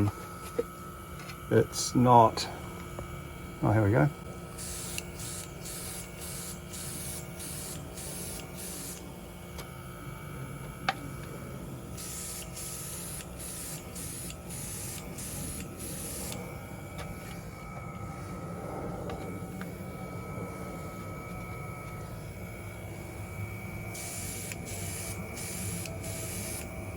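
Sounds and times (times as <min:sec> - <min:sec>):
steady hum: 0:00.0 - 0:26.9
airbrush spraying hiss: 0:04.6 - 0:09.0, 0:12.0 - 0:16.4, 0:23.9 - 0:26.8.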